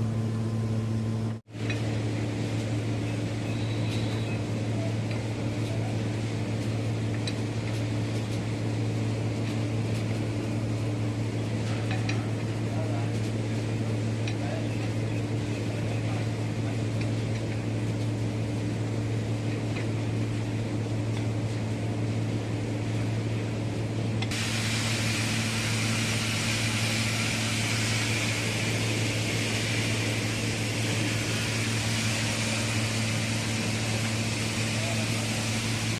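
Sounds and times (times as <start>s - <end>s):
motor hum: 17.5s - 35.9s
steady hiss: 24.3s - 35.9s.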